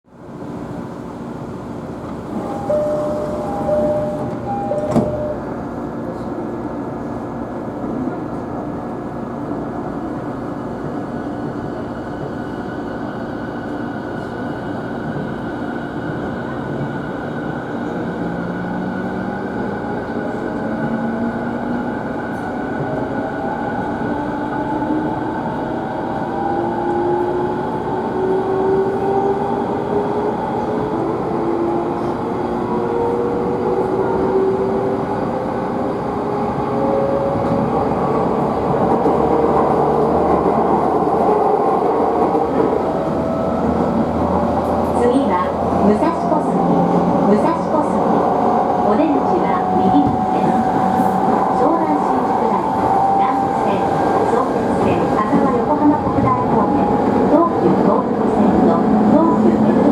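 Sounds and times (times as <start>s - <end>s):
train car rumble: 0.6s - 59.9s
two-tone chime: 2.4s - 5.4s.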